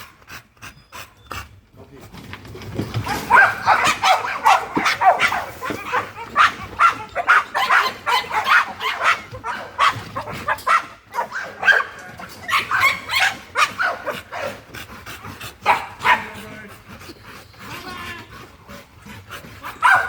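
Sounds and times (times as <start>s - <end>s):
dog barking and yipping: 3.0s - 14.7s, 15.6s - 16.6s, 19.6s - 20.0s.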